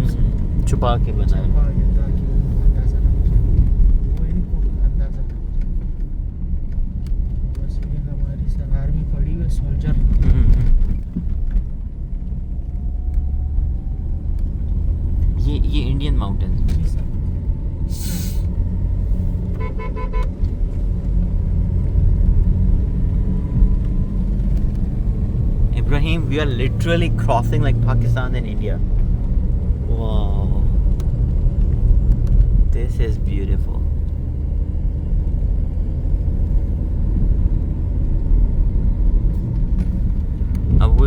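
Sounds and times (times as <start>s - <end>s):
car rumbling along a road: 0.0s - 41.0s
short horn toots: 19.5s - 20.3s.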